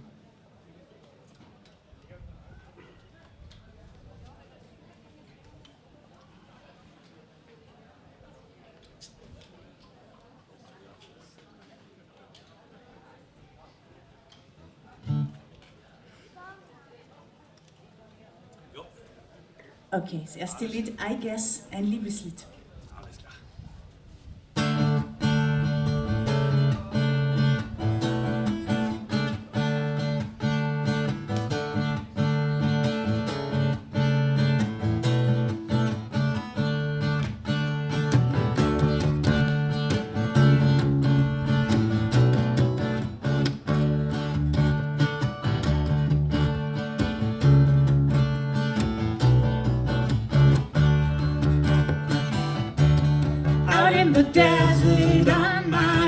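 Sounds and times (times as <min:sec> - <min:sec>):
strummed baritone guitar: 0:15.0 - 0:15.4, 0:24.6 - 0:56.0.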